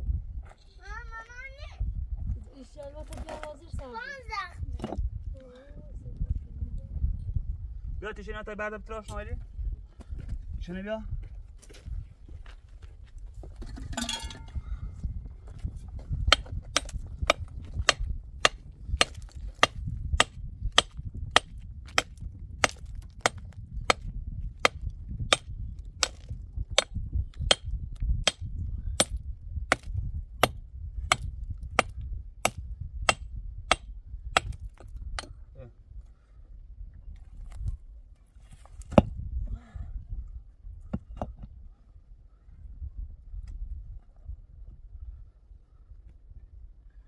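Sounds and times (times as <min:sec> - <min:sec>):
adze chopping wood: 0:16.3 - 0:35.3.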